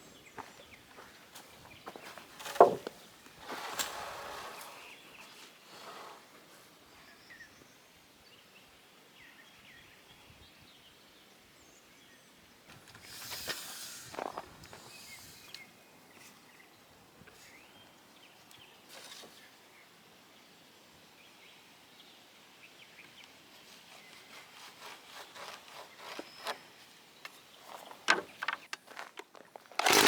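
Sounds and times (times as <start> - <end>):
rustle or scrape with click: 3.4 - 6.3, 12.8 - 15.7, 18.9 - 19.5.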